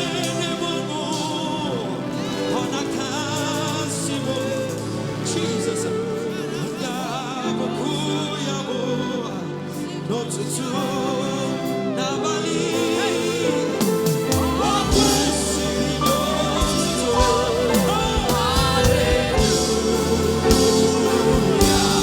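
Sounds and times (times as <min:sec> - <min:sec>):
backing voices and instruments: 0:00.0 - 0:22.0
singer with vibrato: 0:00.0 - 0:22.0
deep bass: 0:14.6 - 0:22.0.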